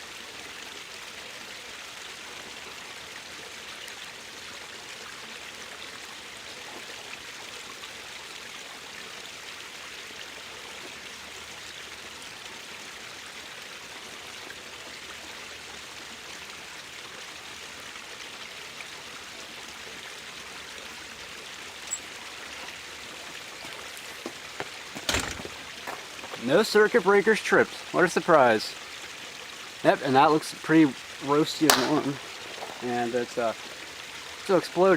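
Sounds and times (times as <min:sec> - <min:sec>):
sharp pop of failing component: 0:31.6 - 0:32.6.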